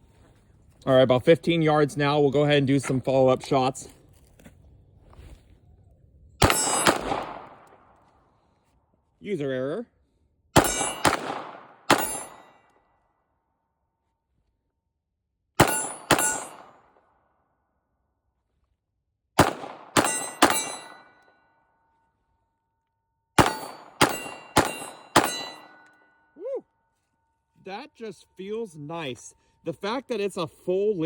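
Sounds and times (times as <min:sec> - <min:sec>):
pistol shots: 0:06.4 - 0:07.9, 0:10.6 - 0:12.5, 0:15.6 - 0:17.0, 0:19.4 - 0:21.1, 0:23.4 - 0:25.9
short metallic ring: 0:10.6 - 0:11.1, 0:12.0 - 0:12.8, 0:15.6 - 0:16.8, 0:20.0 - 0:21.7, 0:23.4 - 0:26.4.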